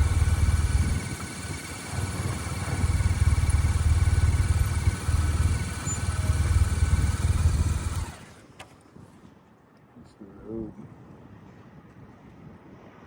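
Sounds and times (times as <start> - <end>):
wind buffeting microphone: 0.0 - 8.2.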